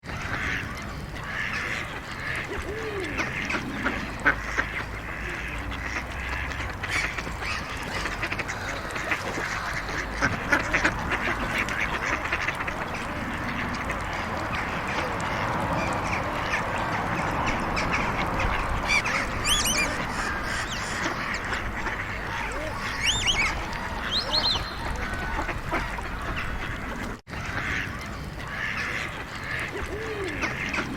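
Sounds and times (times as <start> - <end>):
ducks quacking: 0.0 - 30.9
road traffic rumble: 0.1 - 30.9
high chirps: 19.4 - 20.9, 22.8 - 24.9.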